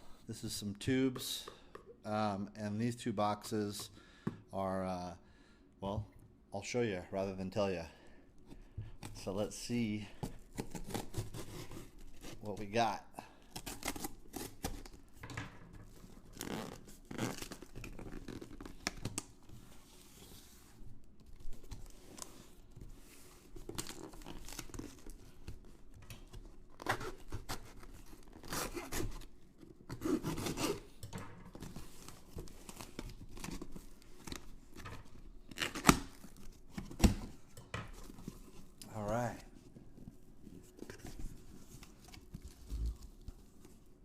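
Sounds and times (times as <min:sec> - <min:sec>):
packing tape ripping: 0:35.4 - 0:37.2.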